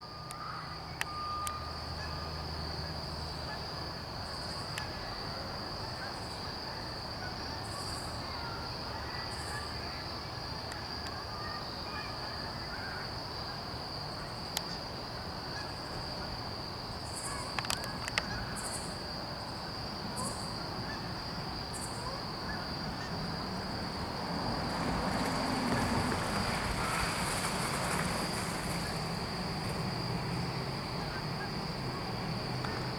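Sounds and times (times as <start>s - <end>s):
crickets trilling: 0.0s - 32.9s.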